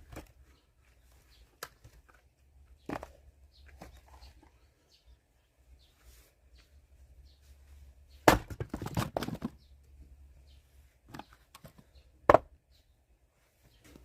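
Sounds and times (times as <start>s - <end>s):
axe splitting logs: 8.2s - 9.5s
wood clattering: 8.2s - 9.6s.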